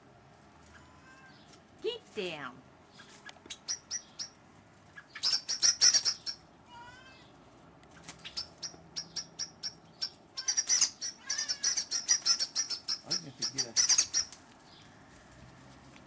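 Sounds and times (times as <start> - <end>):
bird alarm calls: 2.9 - 4.4, 5.0 - 6.4, 8.0 - 14.4.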